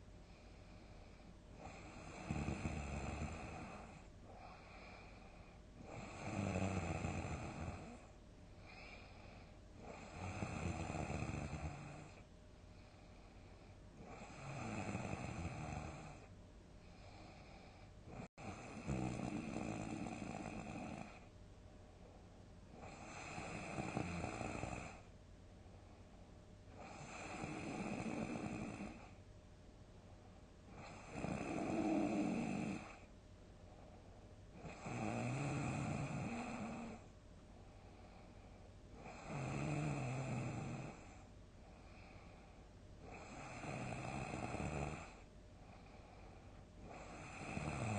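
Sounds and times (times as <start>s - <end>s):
quiet breathing: 0.0s - 47.9s
person snoring loudly: 1.6s - 4.6s, 5.8s - 8.1s, 9.8s - 12.2s, 14.0s - 16.3s, 18.1s - 21.2s, 22.8s - 25.1s, 26.8s - 29.1s, 30.8s - 33.0s, 34.6s - 37.0s, 39.0s - 41.0s, 43.0s - 45.2s, 46.8s - 47.9s.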